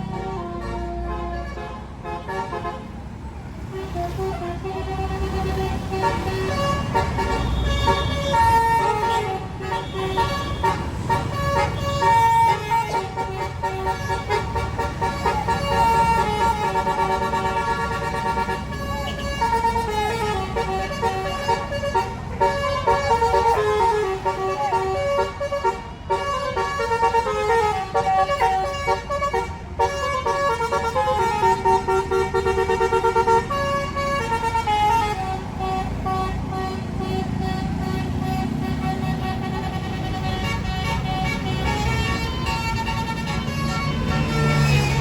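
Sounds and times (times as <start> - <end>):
bus engine running: 0.0 - 45.0
bus multi-tone air horn tune: 0.0 - 45.0.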